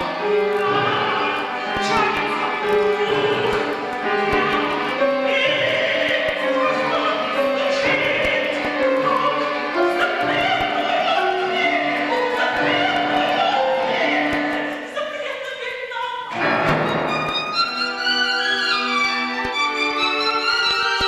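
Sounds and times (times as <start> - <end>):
chamber string orchestra: 0.0 - 15.7, 16.3 - 21.0
woman singing with vibrato: 0.0 - 16.6.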